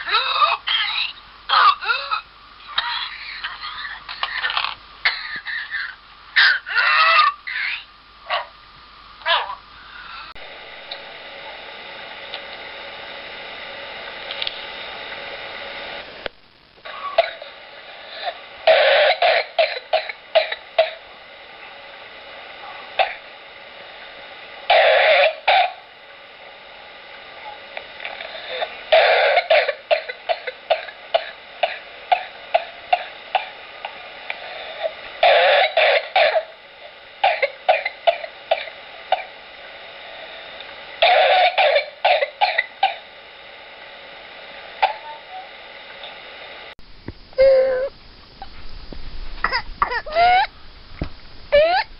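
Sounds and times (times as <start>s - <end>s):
steady hiss: 0.0s - 51.9s
rapid coughing fits: 2.8s - 5.9s, 18.1s - 21.0s, 28.1s - 34.0s, 34.6s - 36.5s, 37.2s - 39.4s, 41.0s - 43.1s.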